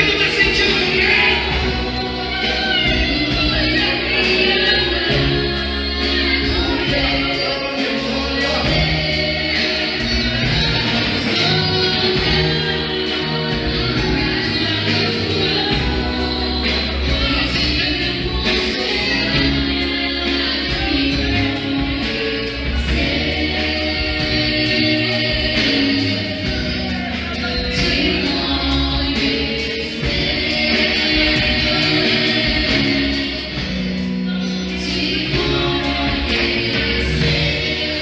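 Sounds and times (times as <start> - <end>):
band with bass and beat: 0.0 - 38.0
voices singing together: 0.0 - 38.0.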